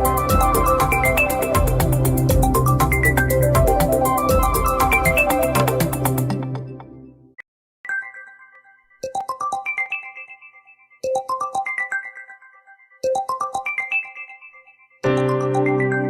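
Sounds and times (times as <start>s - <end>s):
ringtone with low notes: 0.0s - 5.5s, 7.9s - 16.0s
phone ringtone melody: 7.9s - 16.0s.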